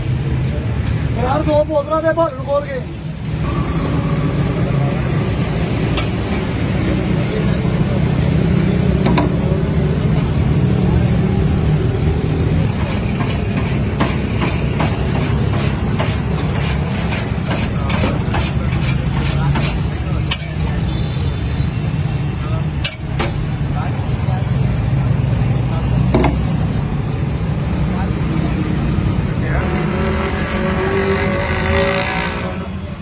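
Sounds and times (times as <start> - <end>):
engine rumble: 0.0 - 20.8.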